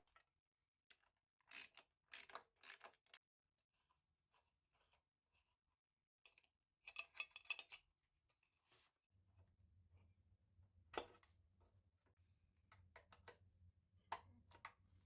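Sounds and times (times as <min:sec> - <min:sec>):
faint clicks and rattles of hand work: 0:00.9 - 0:03.2, 0:06.2 - 0:08.9, 0:10.9 - 0:13.5.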